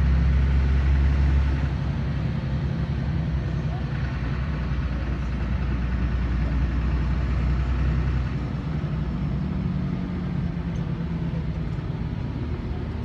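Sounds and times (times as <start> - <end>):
bus diesel engine droning: 0.0 - 13.0.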